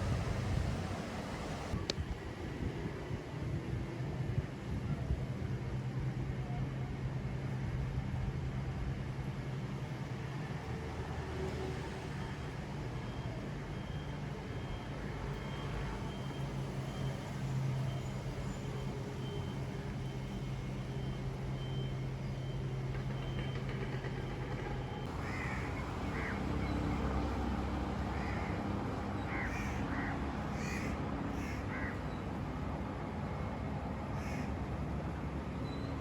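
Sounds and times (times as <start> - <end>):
birds cawing: 25.1 - 27.1, 28.0 - 32.2, 34.1 - 34.5.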